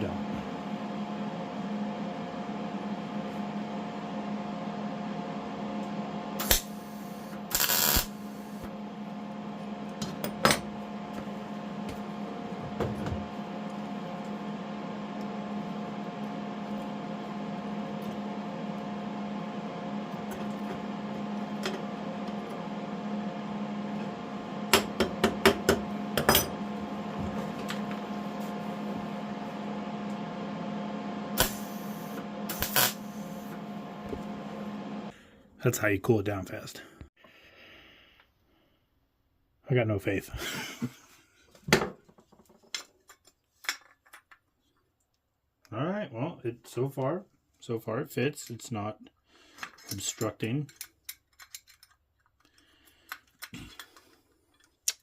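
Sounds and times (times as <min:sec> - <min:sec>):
electrical hum: 0:00.0 - 0:38.8
welding crackle: 0:06.4 - 0:08.6, 0:31.4 - 0:33.2.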